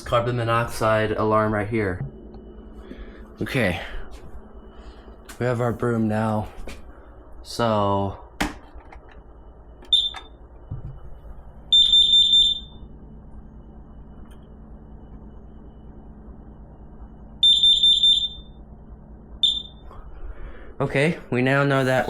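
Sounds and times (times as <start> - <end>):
alarm high-pitched beeps: 9.9 - 10.4, 11.7 - 12.9, 17.4 - 18.6, 19.4 - 19.9.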